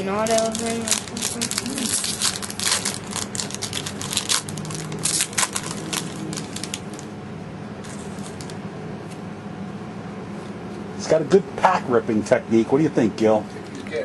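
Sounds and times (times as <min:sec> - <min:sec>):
foil pack ripping and crinkling: 0:00.0 - 0:07.1, 0:07.8 - 0:08.6.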